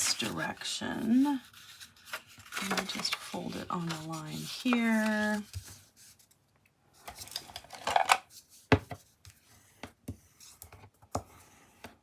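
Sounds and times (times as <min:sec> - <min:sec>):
paper rubbing strokes: 0:00.0 - 0:06.2.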